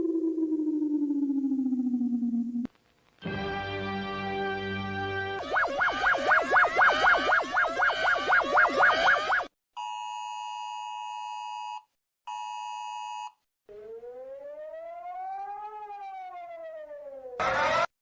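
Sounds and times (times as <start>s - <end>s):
siren-like wail: 0.0s - 2.7s, 5.4s - 9.5s, 13.7s - 17.9s.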